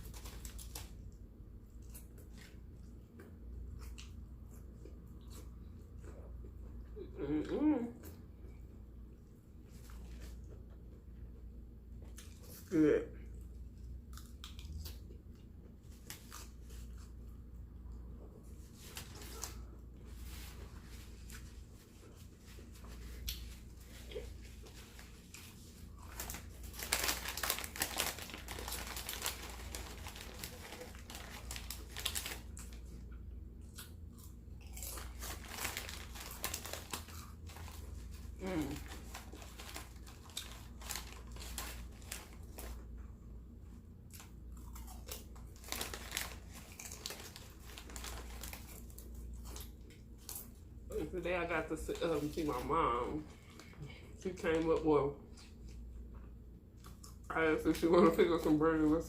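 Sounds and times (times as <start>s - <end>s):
chewing and crunching food: 0.0s - 51.2s, 51.8s - 59.0s
crinkling: 18.6s - 33.0s, 34.2s - 43.0s, 44.1s - 55.8s
small crackles: 24.6s - 32.8s.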